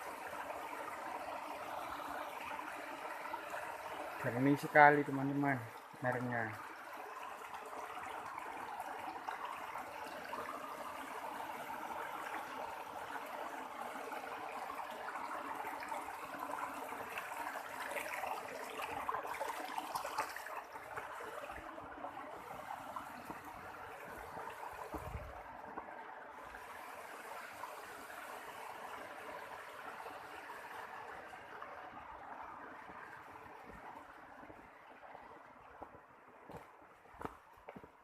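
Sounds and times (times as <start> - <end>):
stream running: 0.0 - 38.0.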